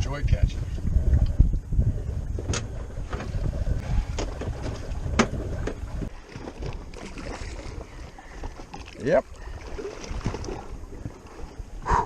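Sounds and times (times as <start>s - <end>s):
wind rumbling on microphone: 0.0s - 12.0s
sharp knocks or splashes: 9.6s - 10.6s.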